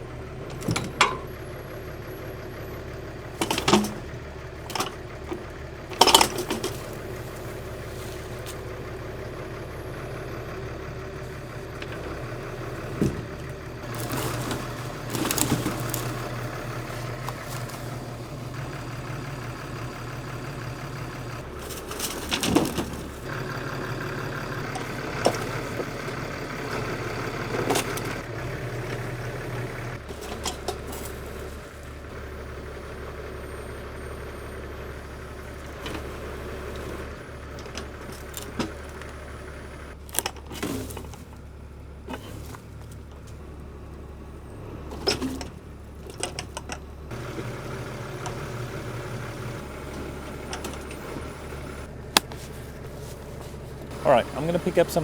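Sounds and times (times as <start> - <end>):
tractor engine running: 0.0 - 55.0
sharp knocks and metallic clanks: 0.5 - 1.4, 3.4 - 7.1.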